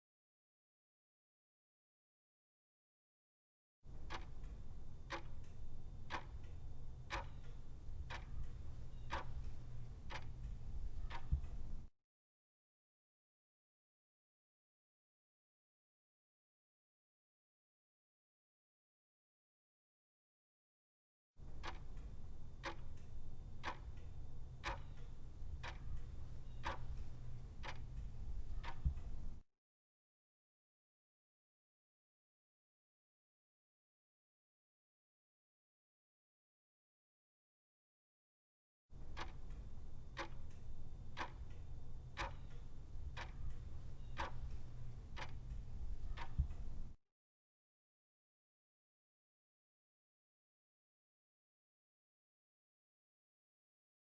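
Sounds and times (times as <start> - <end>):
clock ticking: 3.9 - 11.9, 21.4 - 29.4, 39.0 - 47.0
steady low hum: 3.9 - 11.9, 21.4 - 29.4, 39.0 - 47.0.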